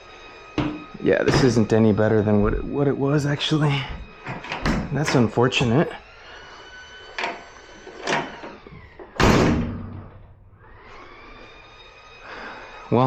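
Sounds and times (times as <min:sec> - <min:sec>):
tailgate slamming shut: 0:09.2 - 0:10.4.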